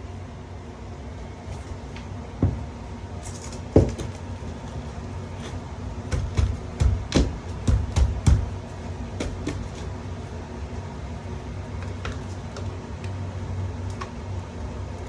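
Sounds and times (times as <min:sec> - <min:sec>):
knocks on tile: 0:06.1 - 0:09.8.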